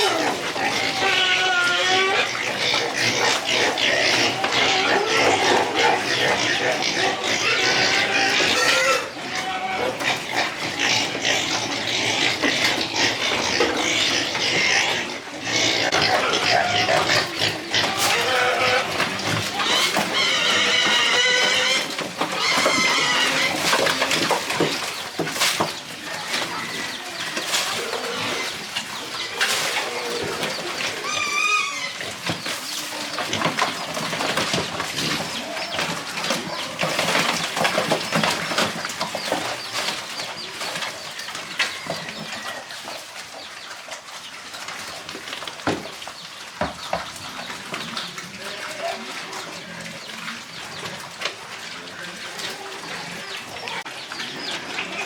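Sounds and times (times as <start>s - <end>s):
chicken clucking: 0.0s - 55.0s.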